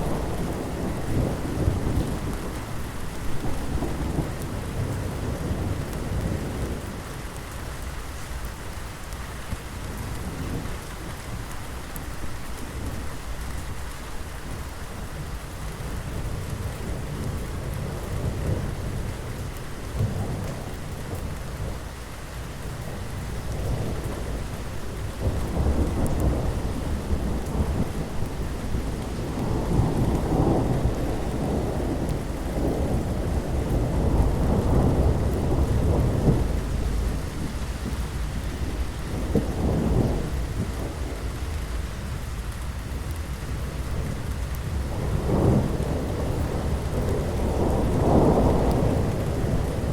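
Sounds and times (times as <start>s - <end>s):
steady rain: 0.0s - 49.9s
rolling thunder: 22.6s - 49.9s.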